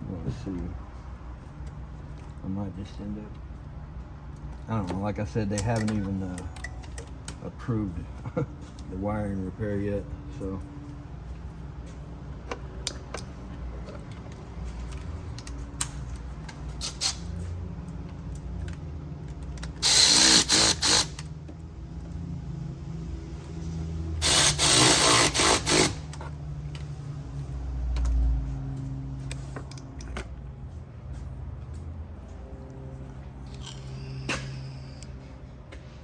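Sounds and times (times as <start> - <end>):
low shop hum: 0.0 - 36.0
power drill bursts: 19.8 - 21.2, 24.2 - 26.1.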